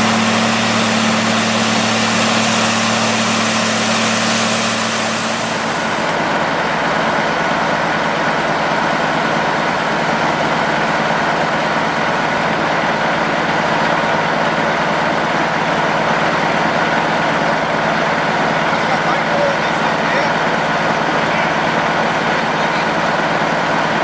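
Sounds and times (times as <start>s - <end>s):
heavy diesel engine: 0.0s - 24.0s.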